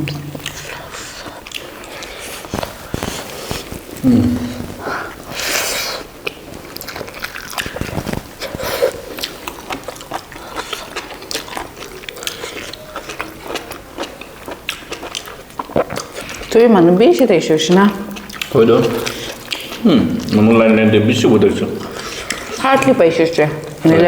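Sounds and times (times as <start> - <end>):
wet chewing and mouth sounds: 0.0 - 20.8, 21.8 - 24.0.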